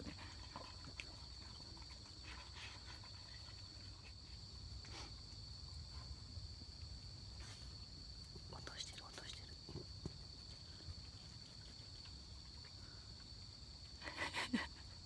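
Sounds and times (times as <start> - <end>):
crickets chirring: 0.0 - 15.0.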